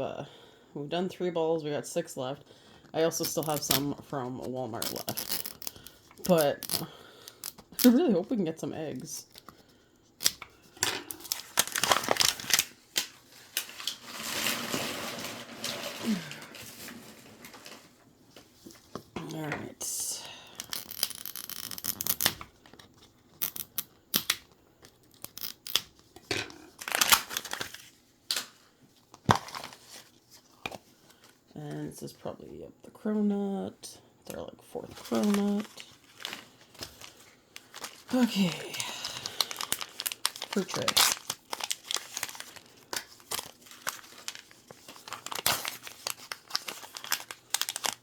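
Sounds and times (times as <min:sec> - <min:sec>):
plastic wrapping crinkling: 0:03.1 - 0:08.3, 0:08.9 - 0:18.9, 0:20.6 - 0:28.6, 0:34.9 - 0:48.0.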